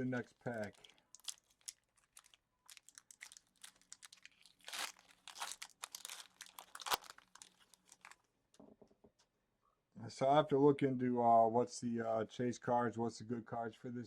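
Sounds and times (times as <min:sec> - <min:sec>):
foil wrapper crinkling and tearing: 0:00.1 - 0:08.2.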